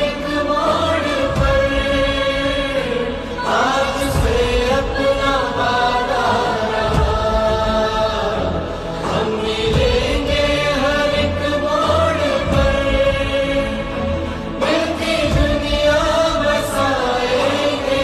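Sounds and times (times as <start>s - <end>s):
choir-like chant: 0.0s - 18.0s
steady low drone: 0.0s - 18.0s.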